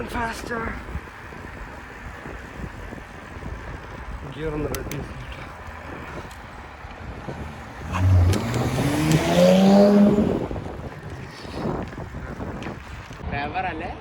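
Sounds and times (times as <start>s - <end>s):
car engine accelerating hard: 7.3s - 10.8s.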